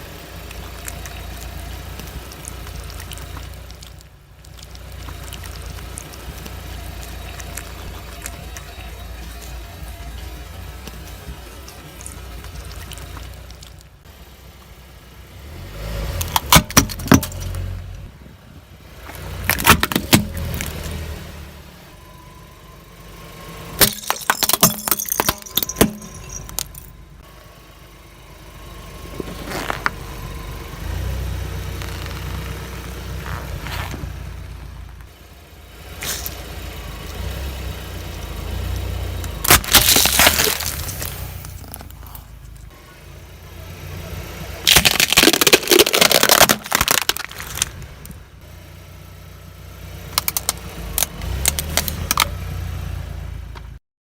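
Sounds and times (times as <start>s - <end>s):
low rumble of tyres: 0.0s - 53.8s
objects cracking under tyres: 0.3s - 8.8s, 10.8s - 14.1s, 16.1s - 18.1s, 19.0s - 21.0s, 23.8s - 26.9s, 29.1s - 30.0s, 31.0s - 35.2s, 39.2s - 42.7s, 44.6s - 48.2s, 50.1s - 52.4s.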